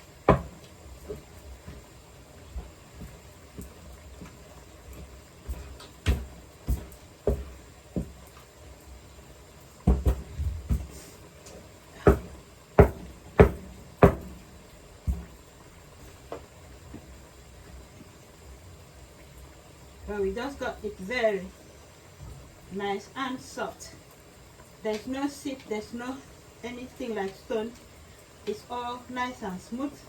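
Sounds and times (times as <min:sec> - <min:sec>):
rolling pin pounding in wooden bowl: 0:00.3 - 0:00.6, 0:12.1 - 0:14.4.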